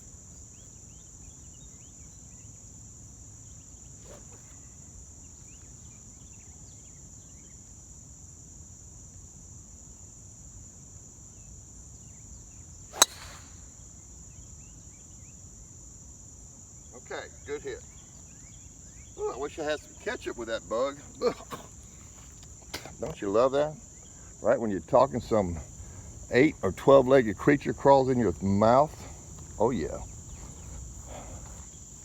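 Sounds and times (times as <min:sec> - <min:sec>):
insects droning: 0:00.0 - 0:32.0
golf club striking ball: 0:12.9 - 0:13.8.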